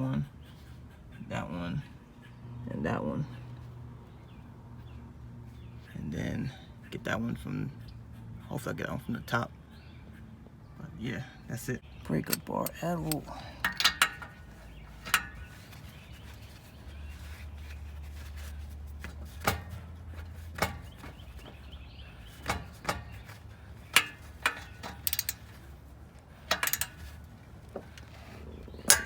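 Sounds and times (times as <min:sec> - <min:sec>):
wrench and socket clicking: 0:12.3 - 0:14.4, 0:23.9 - 0:25.6, 0:26.5 - 0:27.1.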